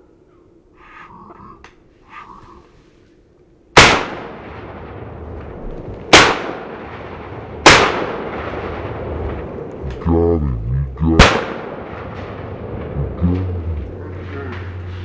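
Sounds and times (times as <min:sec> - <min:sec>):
shotgun shots echoing: 0:03.8 - 0:05.1, 0:06.0 - 0:09.7, 0:11.2 - 0:14.7.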